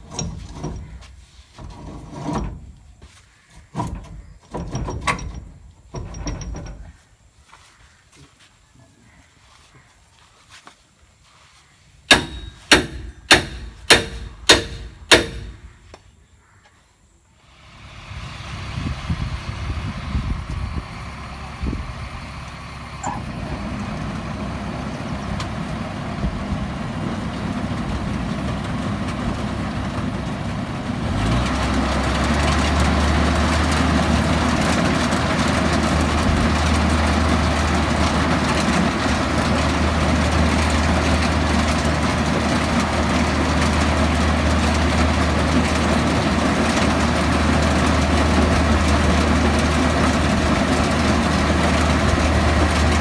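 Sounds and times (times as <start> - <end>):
harvester engine running: 12.1 - 15.9, 17.5 - 53.0.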